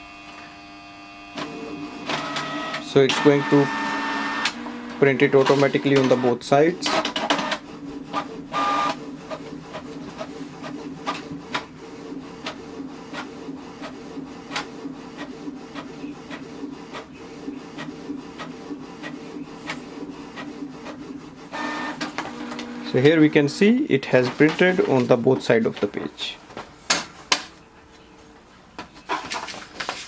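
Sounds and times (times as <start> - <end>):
printer motor humming: 0.0 - 26.6
printer whir: 0.0 - 30.0
printer mechanism clicks: 1.4 - 7.6.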